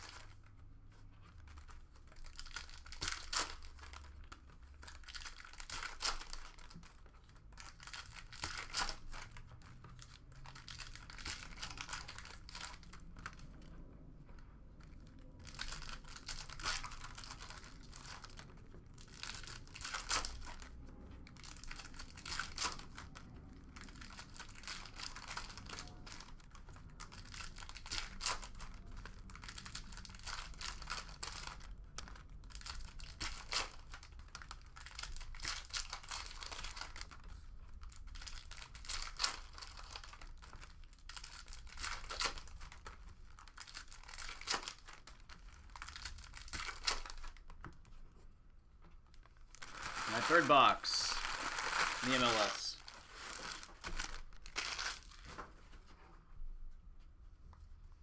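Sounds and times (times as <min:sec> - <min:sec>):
card pack wrappers tearing: 0:01.5 - 0:04.2, 0:04.8 - 0:13.4, 0:15.4 - 0:20.7, 0:37.8 - 0:47.4, 0:49.5 - 0:55.3.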